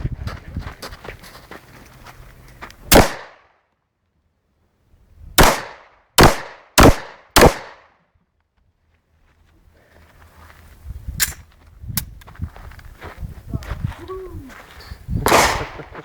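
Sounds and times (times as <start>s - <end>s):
gunshots with echo: 2.9s - 3.4s, 5.4s - 7.8s, 15.2s - 16.0s.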